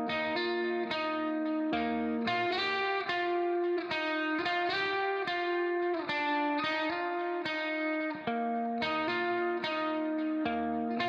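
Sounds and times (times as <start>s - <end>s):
guitar strumming chords: 0.0s - 11.0s.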